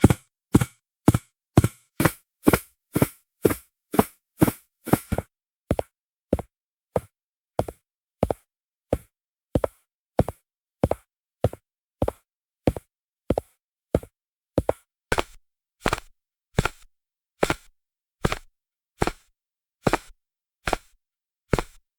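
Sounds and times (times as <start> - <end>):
footsteps on hard floor: 0.0 - 5.8, 12.0 - 19.2, 19.9 - 20.1, 20.7 - 21.8.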